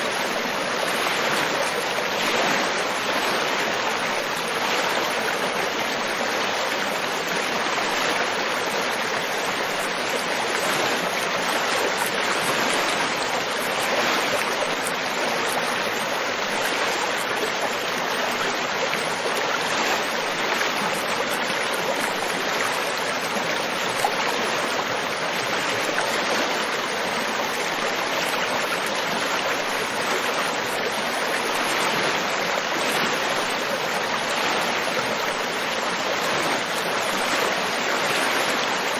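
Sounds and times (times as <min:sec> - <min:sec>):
river water rushing over stones: 0:00.0 - 0:38.9.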